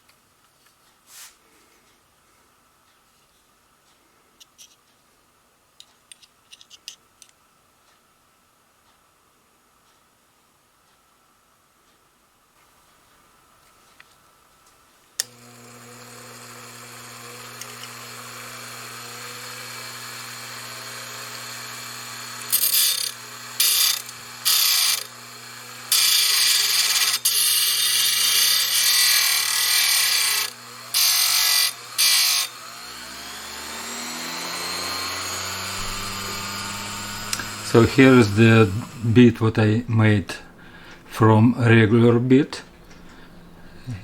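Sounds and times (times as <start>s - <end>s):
drill bit cutting metal: 15.2s - 39.4s
motor winding down: 15.2s - 39.7s
electric drill humming: 15.2s - 39.8s
drill switch click: 35.2s - 37.7s.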